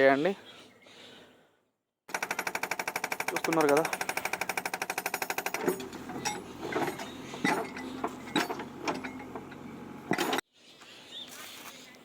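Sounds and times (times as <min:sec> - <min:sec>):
engine running steadily: 0:02.4 - 0:10.4
sharp metallic clanks: 0:03.1 - 0:10.4.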